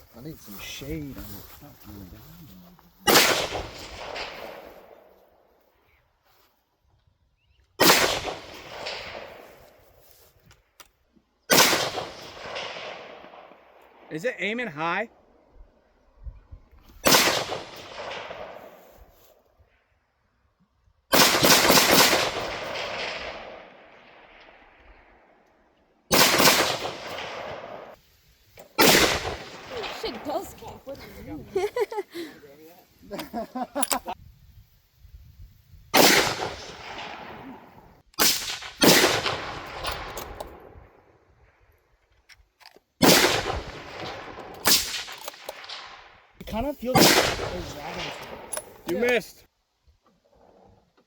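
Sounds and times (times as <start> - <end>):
gunshots with echo: 3.1 - 4.9, 7.8 - 9.4, 11.5 - 13.5, 17.0 - 18.7, 21.1 - 24.6, 26.1 - 28.0, 28.8 - 30.2, 36.0 - 37.6, 38.2 - 40.1, 43.0 - 46.0, 46.9 - 48.5.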